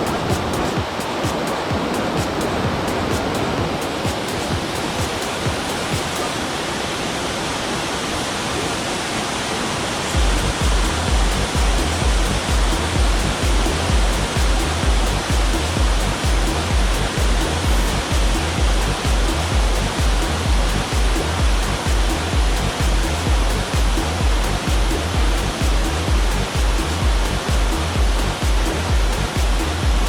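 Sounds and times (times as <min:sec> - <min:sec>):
deep bass beat: 0:00.0 - 0:06.3, 0:10.2 - 0:30.0
waterfall rushing: 0:00.0 - 0:30.0
background music: 0:10.2 - 0:30.0.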